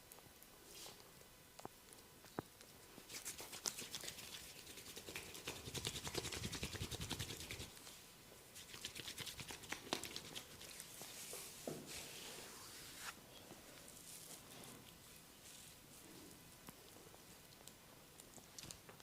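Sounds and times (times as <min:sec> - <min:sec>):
fingers scratching skin and hair: 0:03.1 - 0:07.7, 0:08.6 - 0:11.3.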